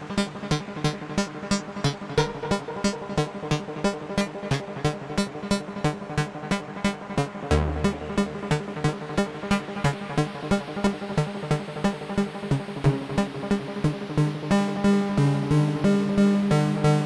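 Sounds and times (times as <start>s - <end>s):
sequenced synthesizer music: 7.5s - 9.2s.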